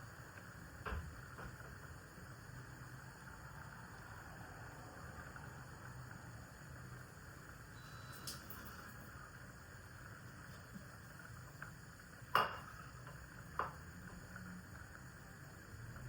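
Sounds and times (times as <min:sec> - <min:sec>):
sharp clack of cookware: 0:12.3 - 0:12.7.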